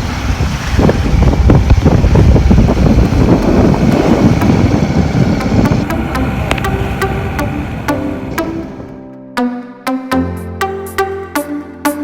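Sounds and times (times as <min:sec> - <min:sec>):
rush of the sea: 0:00.0 - 0:09.0
wind buffeting microphone: 0:00.0 - 0:09.0.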